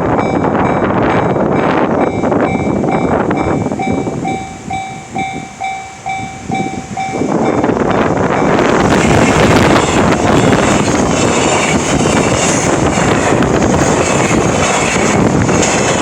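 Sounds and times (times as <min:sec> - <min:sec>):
level crossing warning bell: 0:00.0 - 0:11.0
loud rushing noise: 0:00.0 - 0:16.0.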